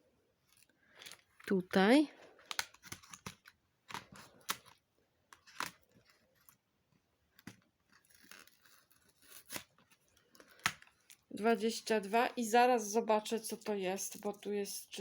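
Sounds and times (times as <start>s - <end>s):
packaging rustling: 7.4s - 11.3s.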